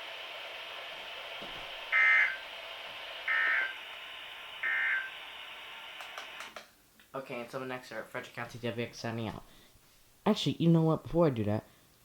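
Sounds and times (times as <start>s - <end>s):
radio hiss: 0.0s - 6.6s
buzzy digital squawks: 1.9s - 2.4s, 3.3s - 3.8s, 4.6s - 5.1s.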